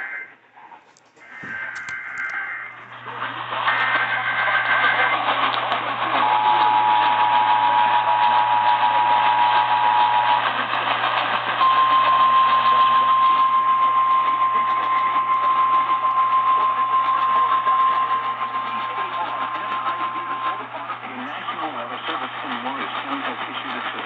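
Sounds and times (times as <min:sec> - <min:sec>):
steady warning alarm tone: 0:00.0 - 0:00.4, 0:01.2 - 0:24.0
radio hiss: 0:00.0 - 0:13.0, 0:14.2 - 0:24.0
two-tone alarm: 0:01.2 - 0:02.8, 0:03.5 - 0:21.1.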